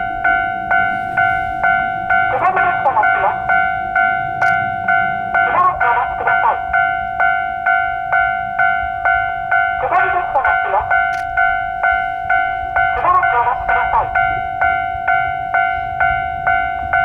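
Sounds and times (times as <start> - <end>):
level crossing alarm ringing: 0.0 - 17.0
recorded woman's voice announcing: 2.2 - 3.5, 5.4 - 6.6, 9.8 - 10.9, 13.0 - 14.2.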